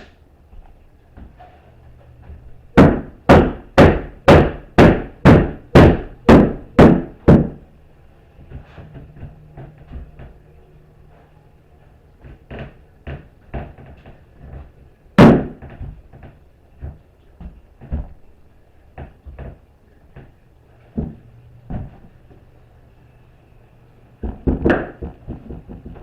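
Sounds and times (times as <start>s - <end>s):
hard objects knocking and clunking: 2.2s - 7.7s, 12.2s - 18.3s, 24.2s - 26.0s.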